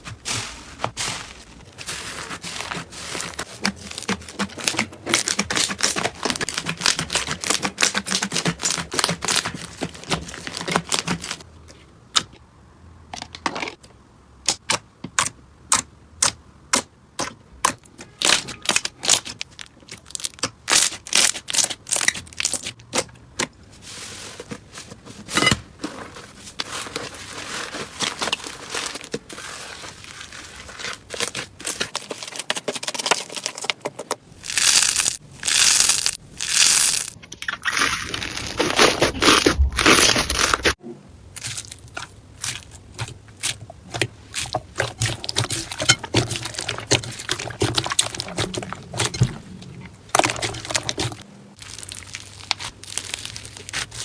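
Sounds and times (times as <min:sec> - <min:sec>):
slime crackling: 0:00.0 - 0:11.4, 0:34.3 - 0:40.8, 0:41.4 - 0:54.0.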